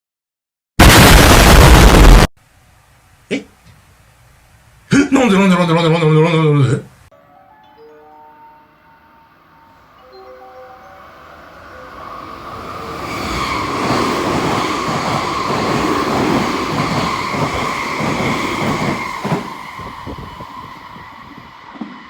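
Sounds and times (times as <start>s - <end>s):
electric train whine: 7.2s - 22.0s
wheels clattering over rails: 13.0s - 22.0s.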